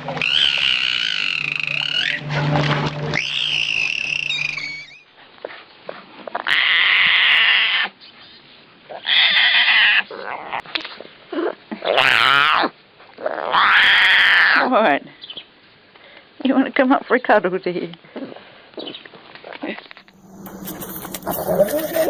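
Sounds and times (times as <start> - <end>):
animal harsh drawn-out cries: 0.0 - 2.3, 3.1 - 5.1, 6.4 - 8.0, 9.0 - 10.6, 11.8 - 12.7, 13.4 - 14.7, 21.1 - 22.0
short high-pitched animal call: 0.2 - 2.2, 3.1 - 5.0.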